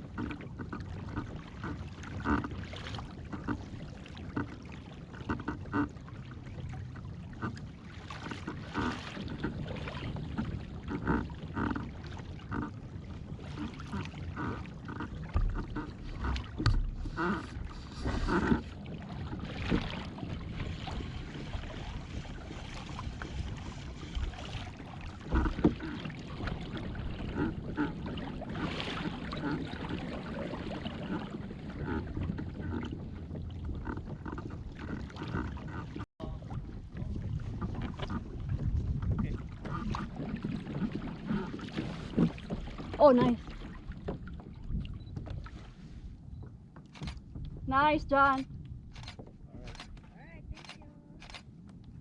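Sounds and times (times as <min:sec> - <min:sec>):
water slapping kayak hull: 0:00.0 - 0:52.0
wind on microphone: 0:12.5 - 0:46.2.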